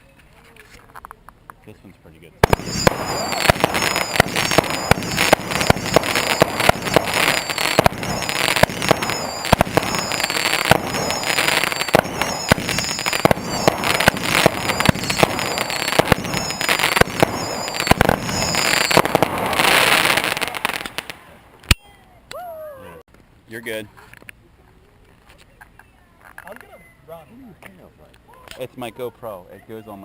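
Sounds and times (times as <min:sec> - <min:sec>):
fireworks whistling: 0:02.4 - 0:21.4
fireworks bangs and pops: 0:02.4 - 0:21.7.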